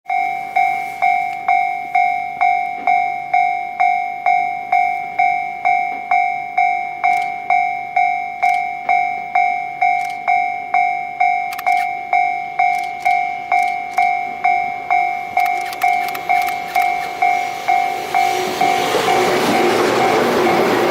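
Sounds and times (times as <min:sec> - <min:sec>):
level-crossing warning bell ringing: 0:00.1 - 0:20.9
clicks: 0:07.1 - 0:07.5, 0:08.4 - 0:08.9, 0:09.9 - 0:10.4, 0:11.5 - 0:12.0, 0:12.6 - 0:14.2, 0:15.4 - 0:17.3
approaching train rushing: 0:13.9 - 0:20.9.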